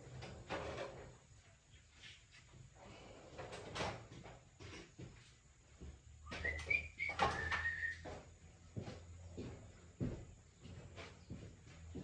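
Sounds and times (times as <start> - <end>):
light knocks and clatter: 3.3 - 12.0.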